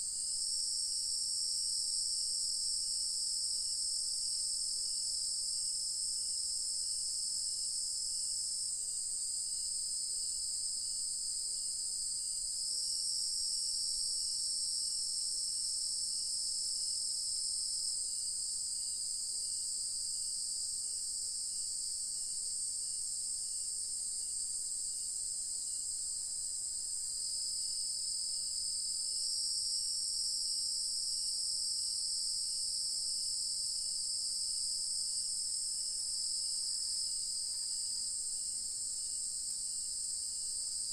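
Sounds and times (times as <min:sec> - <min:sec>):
high-pitched insect trill: 0:24.2 - 0:40.9.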